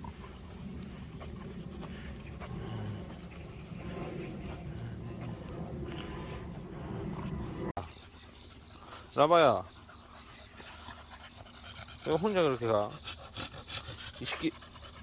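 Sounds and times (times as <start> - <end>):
low outdoor rumble: 0.0 - 7.8
insects chirring: 0.0 - 15.0.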